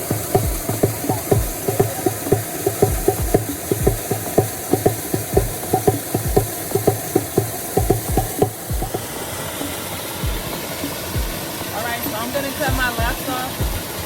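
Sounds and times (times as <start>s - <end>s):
deep drum hits: 0.0s - 9.2s, 10.2s - 10.6s, 11.2s - 11.4s, 12.7s - 13.8s
afrobeat music: 0.0s - 14.0s
steady hiss: 0.0s - 14.0s.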